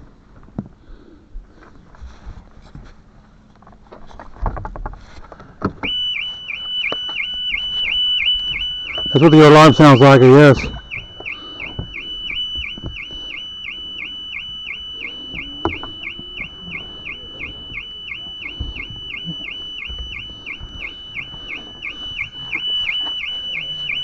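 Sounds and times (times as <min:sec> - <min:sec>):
car alarm tone: 0:05.8 - 0:24.0.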